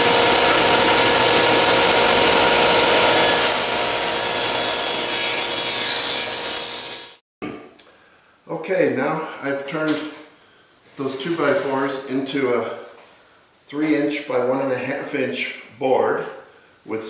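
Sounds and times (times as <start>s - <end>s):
dust collector running: 0.0s - 5.1s
saw blade ripping wood: 0.0s - 5.1s
table saw running: 0.0s - 7.2s.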